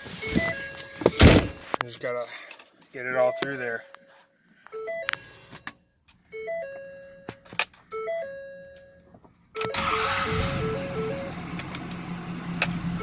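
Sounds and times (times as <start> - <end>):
dashboard warning chime: 0.0 - 2.1, 2.9 - 11.6
engine starting: 9.6 - 11.0.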